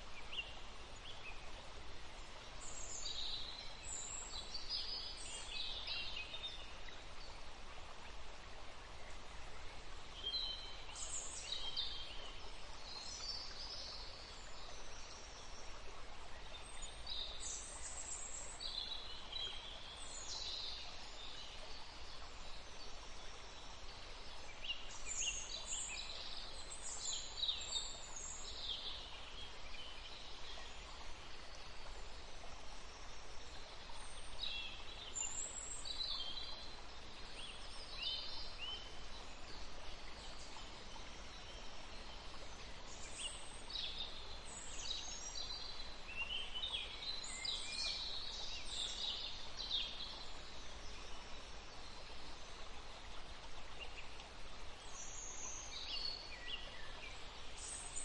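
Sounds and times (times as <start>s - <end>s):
soft background hiss: 0.0s - 58.0s.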